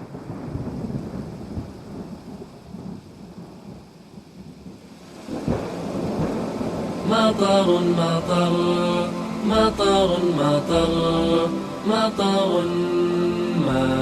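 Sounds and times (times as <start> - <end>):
thunder rumbling: 0.0 - 11.0
steady rain: 0.0 - 14.0.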